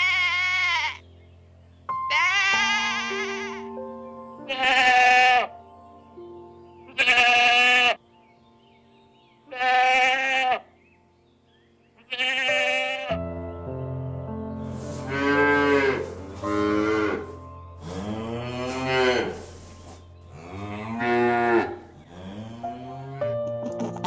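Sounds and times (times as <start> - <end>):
sheep bleating: 0.0 - 1.0, 2.1 - 3.7, 4.5 - 5.5, 6.9 - 8.0, 9.5 - 10.7, 12.0 - 13.2
background music with held notes: 0.0 - 24.0.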